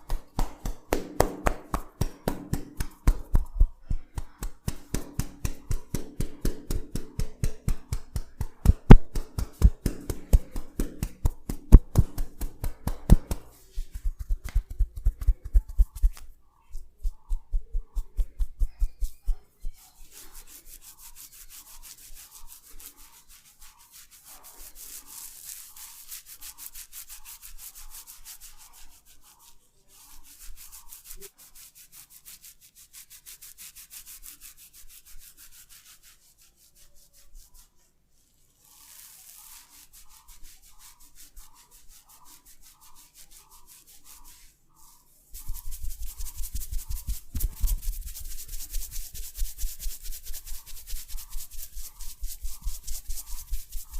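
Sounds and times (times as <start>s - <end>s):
quick low beats: 0.0s - 19.5s, 45.4s - 49.6s
hands rubbing hair and skin: 0.0s - 53.9s.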